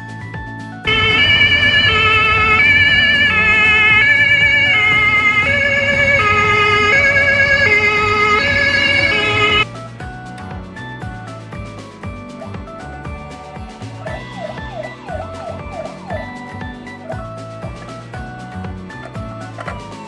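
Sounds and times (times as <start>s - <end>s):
two-tone ambulance siren: 0.9s - 9.7s, 13.6s - 18.6s, 19.2s - 20.0s.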